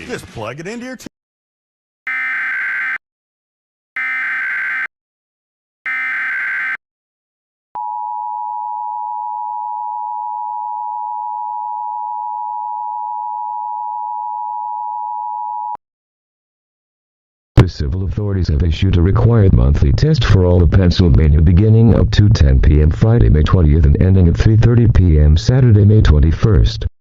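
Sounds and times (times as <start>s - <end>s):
emergency alert data bursts: 2.1s - 3.0s, 4.0s - 4.9s, 5.9s - 6.8s
steady two-tone attention signal: 2.1s - 3.0s, 4.0s - 4.9s, 5.9s - 6.8s.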